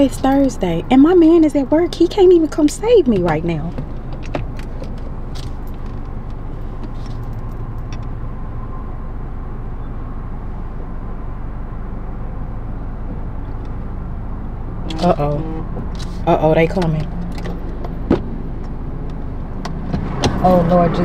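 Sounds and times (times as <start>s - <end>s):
car engine idling: 0.0s - 21.0s.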